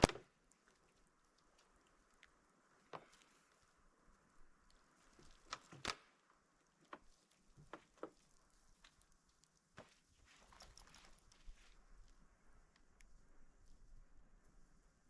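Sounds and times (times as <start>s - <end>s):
faint clicks and light knocks: 4.6s - 13.2s.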